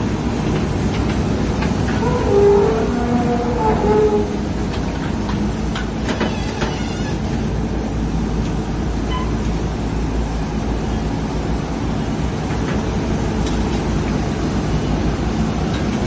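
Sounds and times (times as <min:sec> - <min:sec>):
excavator engine rumble: 0:00.0 - 0:16.0
short squeaks: 0:02.0 - 0:04.4.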